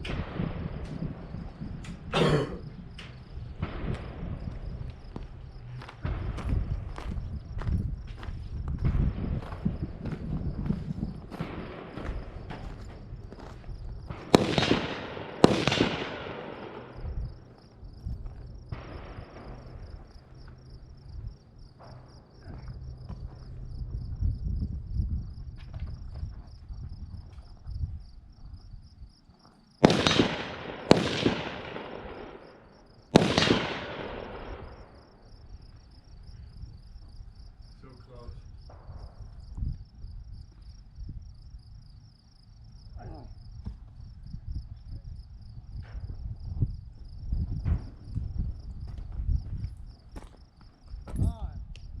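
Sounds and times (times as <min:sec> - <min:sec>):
gunshots with echo: 0:11.3 - 0:12.8, 0:14.1 - 0:17.6, 0:29.8 - 0:35.2.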